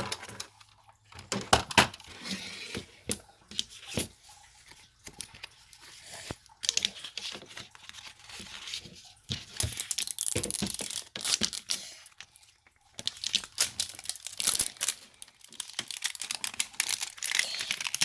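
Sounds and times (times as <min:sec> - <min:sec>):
packaging tearing and crinkling: 0:09.5 - 0:12.0, 0:13.0 - 0:18.0.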